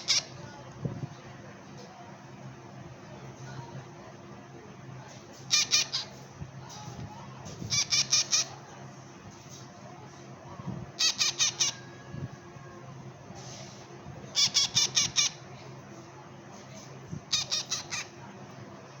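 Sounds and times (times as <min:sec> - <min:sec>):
parrot chick squawking: 0:00.0 - 0:00.4, 0:05.5 - 0:06.2, 0:07.7 - 0:08.6, 0:11.0 - 0:12.0, 0:14.3 - 0:15.4, 0:17.3 - 0:18.2.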